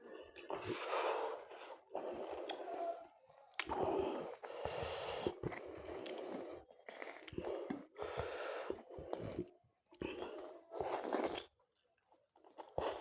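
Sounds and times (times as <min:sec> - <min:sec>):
person chewing: 0:00.2 - 0:02.8, 0:03.5 - 0:11.5
loud breaths: 0:03.8 - 0:06.5, 0:07.6 - 0:08.9.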